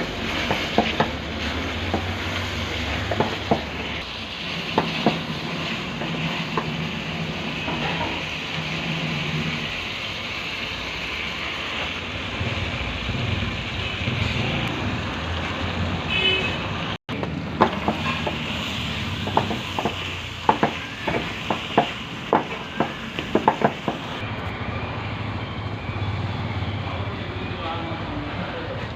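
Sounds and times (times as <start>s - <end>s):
food sizzling in a pan: 0.0s - 16.8s, 17.5s - 24.2s.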